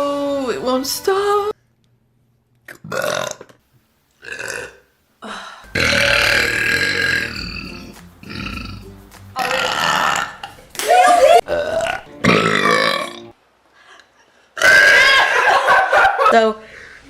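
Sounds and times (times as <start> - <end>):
person burping: 2.7 - 3.6, 4.2 - 4.8, 5.7 - 10.6, 11.4 - 13.3, 14.6 - 15.3.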